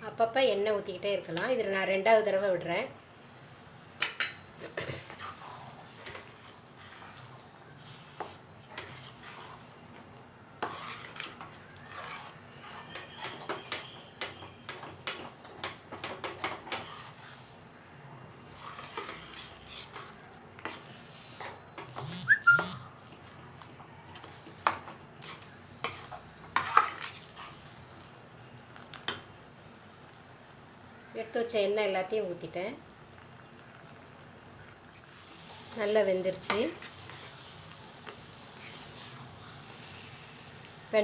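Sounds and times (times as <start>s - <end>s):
metal spatula scraping a pan: 4.8s - 9.8s, 10.6s - 17.6s, 18.5s - 21.6s, 24.2s - 27.8s, 35.0s - 37.6s, 38.5s - 40.4s.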